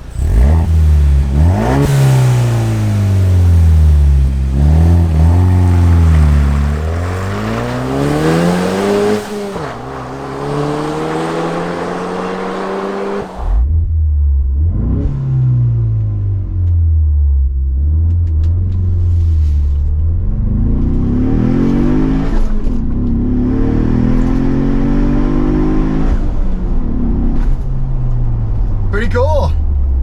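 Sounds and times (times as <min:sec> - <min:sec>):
car engine accelerating through gears: 0:00.0 - 0:28.9.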